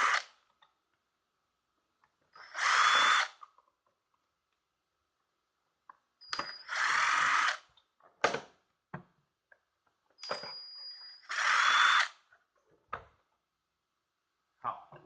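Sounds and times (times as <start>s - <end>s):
electric screwdriver whirring: 2.4s - 3.4s, 6.4s - 7.7s, 11.2s - 12.2s.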